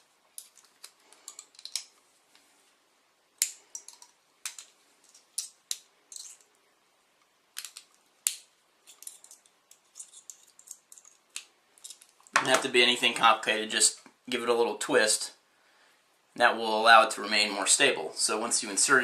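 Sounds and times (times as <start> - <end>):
wire scratching: 7.6 - 12.3.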